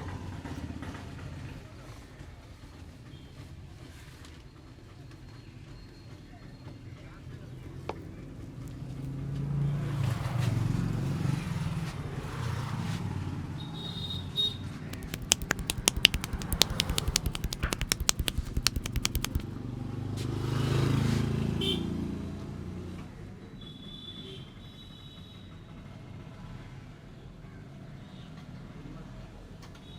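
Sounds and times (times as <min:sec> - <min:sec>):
hands slapping on head: 0:15.0 - 0:19.5.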